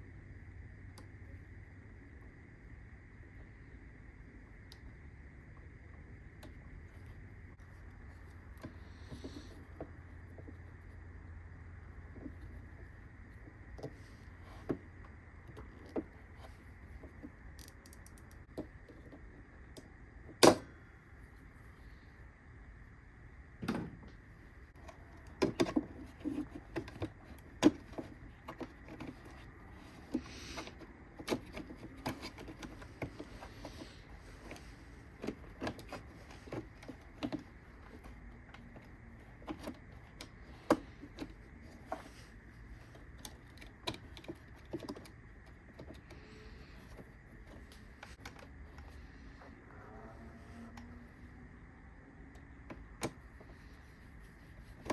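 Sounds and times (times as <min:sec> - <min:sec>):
small parts clicking and knocking: 0:15.5 - 0:19.2.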